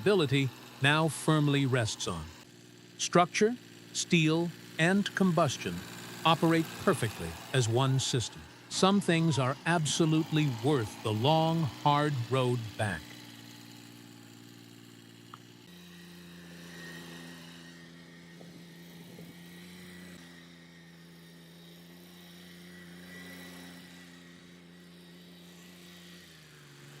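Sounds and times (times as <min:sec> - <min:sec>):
diesel tractor engine humming: 0:03.1 - 0:13.2.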